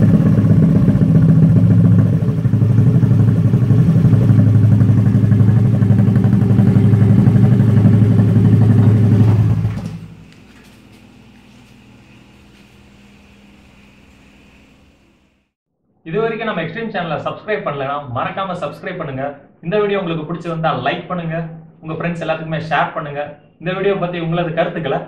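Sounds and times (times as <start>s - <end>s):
scooter engine running: 0.0s - 15.0s
faint hum: 0.0s - 15.5s.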